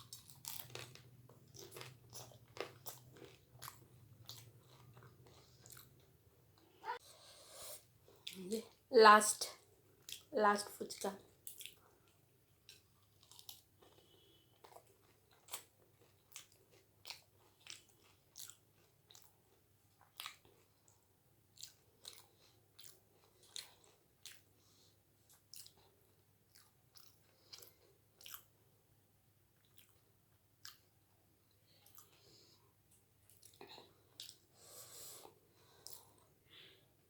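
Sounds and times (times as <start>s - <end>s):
chewing crisp food crunches: 0.0s - 6.2s, 11.3s - 24.6s, 25.2s - 28.6s.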